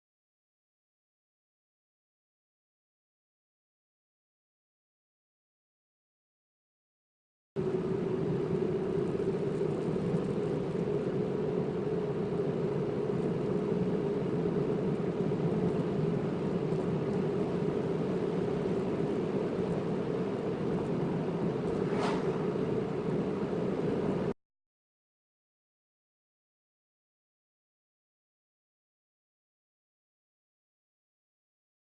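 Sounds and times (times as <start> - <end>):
car engine and road noise: 7.6 - 24.3
brief sharp sound: 21.8 - 22.5.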